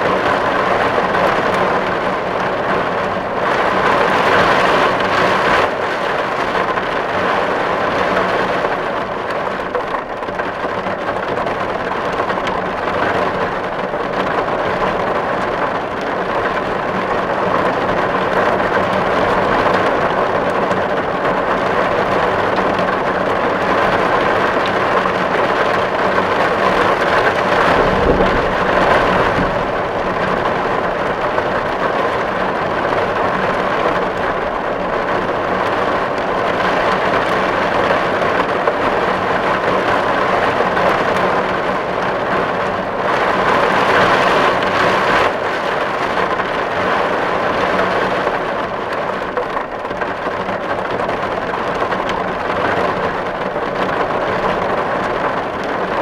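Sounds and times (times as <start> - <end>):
rain on a tin roof: 0.0 - 56.0
low rumble: 26.6 - 32.9.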